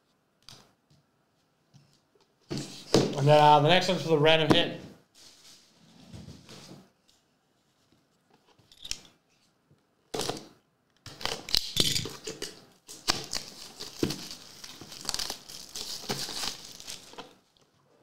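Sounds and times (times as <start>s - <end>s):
wrapper crinkling and tearing: 11.1s - 17.5s.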